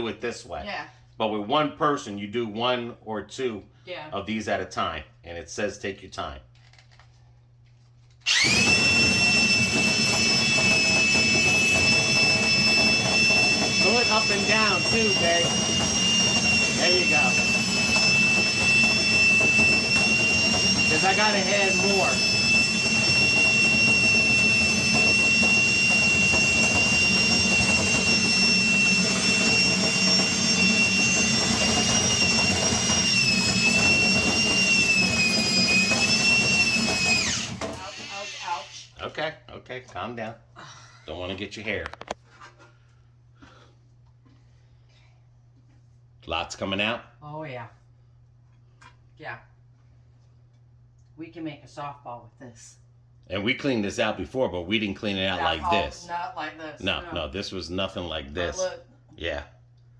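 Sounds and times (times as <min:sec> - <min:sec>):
electric drill whining: 0:08.2 - 0:38.9, 0:55.2 - 0:56.0
brush scraping inside duct: 0:08.6 - 0:37.2.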